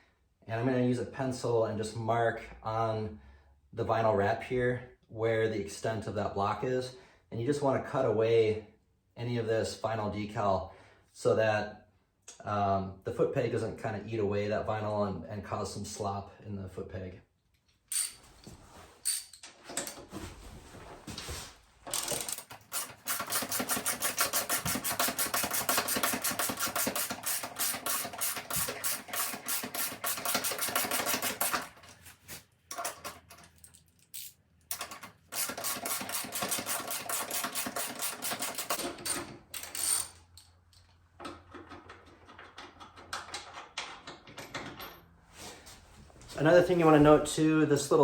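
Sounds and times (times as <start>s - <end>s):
ratchet wrench clicking: 21.9s - 31.7s, 33.7s - 40.5s.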